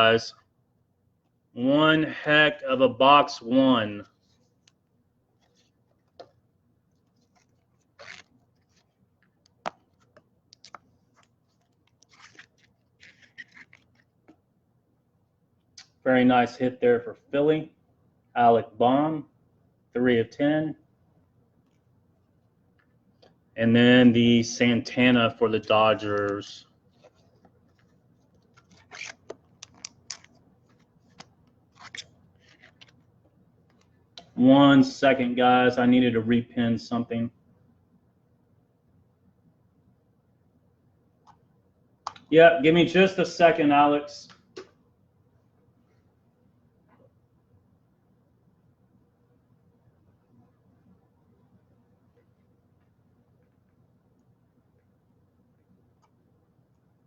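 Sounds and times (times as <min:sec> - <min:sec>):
trading cards shuffled: 0:07.0 - 0:14.1, 0:27.0 - 0:33.1.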